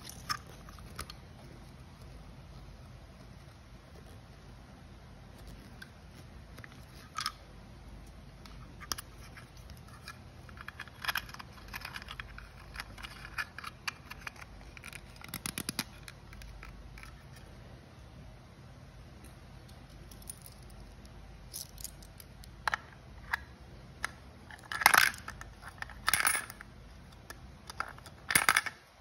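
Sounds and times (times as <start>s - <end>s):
low steady hum: 0.0s - 29.0s
clicks and scrapes of handling: 8.4s - 17.5s.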